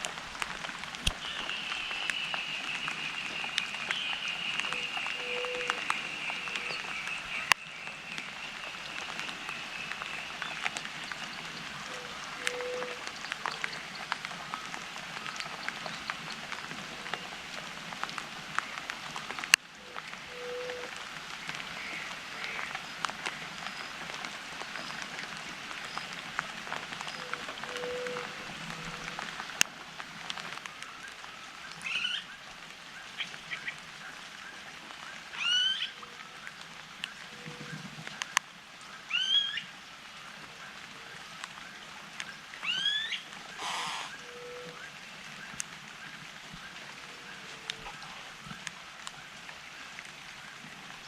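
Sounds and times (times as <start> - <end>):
bird calls: 0.0 - 16.5, 21.5 - 29.6, 42.6 - 48.2
rain dripping on a river: 0.0 - 51.0.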